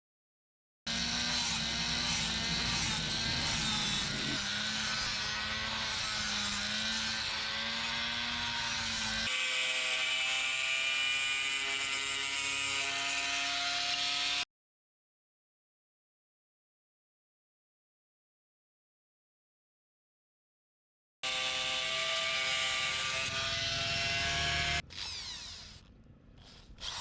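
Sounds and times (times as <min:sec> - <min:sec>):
power tool motor whining: 0:00.9 - 0:14.4, 0:21.2 - 0:27.0.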